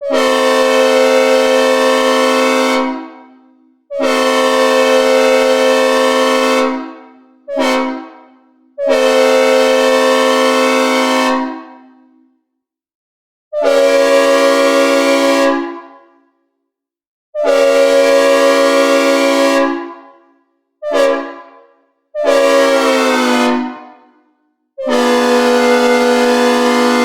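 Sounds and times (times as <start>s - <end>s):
locomotive air horn blasts: 0.0s - 3.2s, 3.9s - 12.2s, 13.6s - 15.8s, 17.4s - 20.0s, 20.8s - 21.6s, 22.2s - 23.9s, 24.8s - 27.0s.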